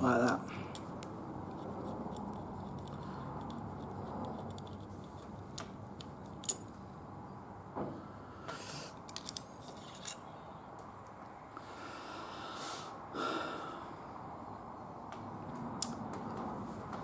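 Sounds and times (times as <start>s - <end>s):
low background hum: 0.0s - 17.0s
metallic clicks and taps: 4.2s - 6.8s, 15.8s - 16.4s.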